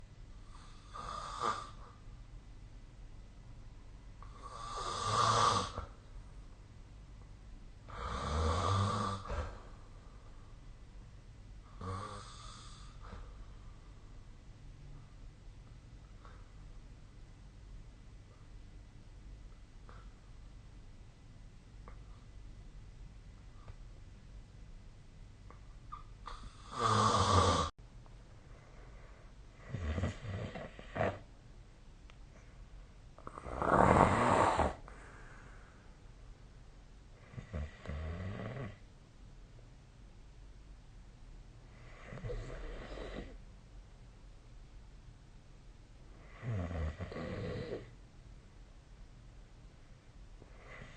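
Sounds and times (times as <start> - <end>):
person snoring: 0.4 - 1.8, 4.2 - 5.9, 7.9 - 9.6, 11.8 - 13.0, 26.3 - 27.7, 33.2 - 35.2, 46.2 - 47.9.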